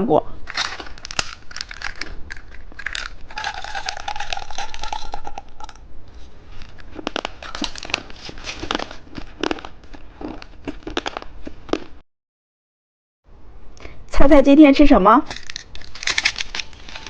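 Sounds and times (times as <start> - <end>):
plastic packaging crinkling and tearing: 0.4 - 5.7, 6.5 - 11.3, 15.3 - 17.0.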